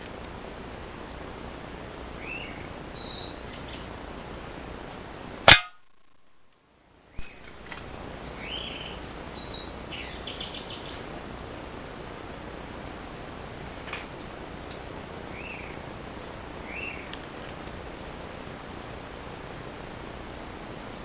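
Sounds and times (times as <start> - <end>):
outdoor background noise: 0.0 - 21.0
birds chirping: 1.6 - 4.0, 8.2 - 11.1, 15.3 - 15.8, 16.6 - 17.2
air rifle shot: 5.5 - 6.2.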